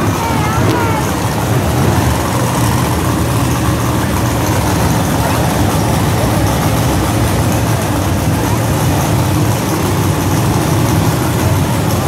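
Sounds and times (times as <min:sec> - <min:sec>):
truck engines idling loudly: 0:00.0 - 0:12.0.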